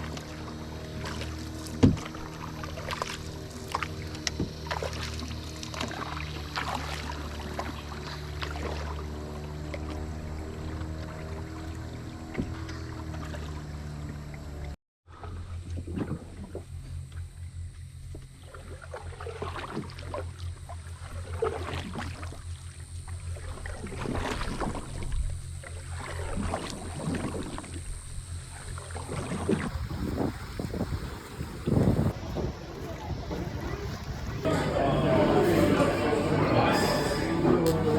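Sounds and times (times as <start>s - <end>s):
rushing water noise: 0.0s - 13.7s
boat engine humming: 0.0s - 37.9s.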